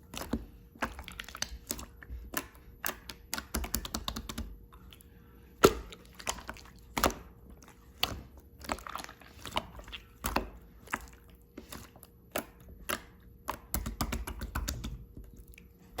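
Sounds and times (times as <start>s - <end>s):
slime clicking and wet pops: 0.1s - 4.5s, 5.6s - 7.3s.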